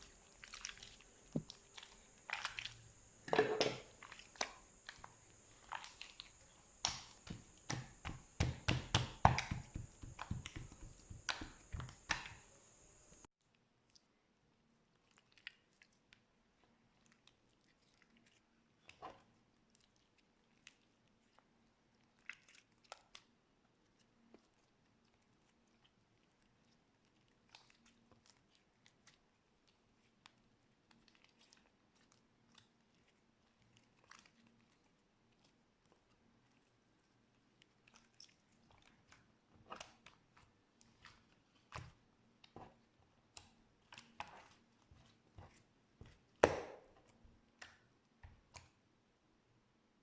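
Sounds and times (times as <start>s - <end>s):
slime squished by hand: 0.0s - 13.2s.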